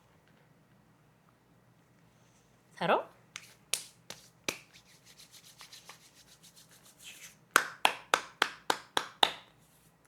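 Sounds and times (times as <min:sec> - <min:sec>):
hands rubbing: 0:03.4 - 0:10.0.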